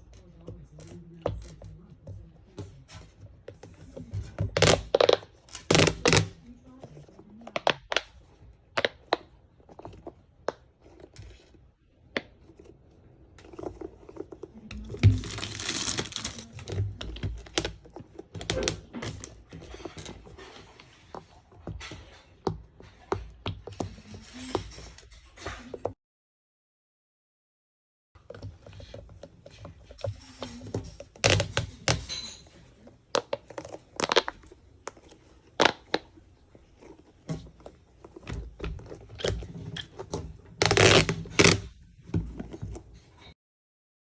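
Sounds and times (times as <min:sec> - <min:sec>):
packaging rustling: 0:13.4 - 0:19.4.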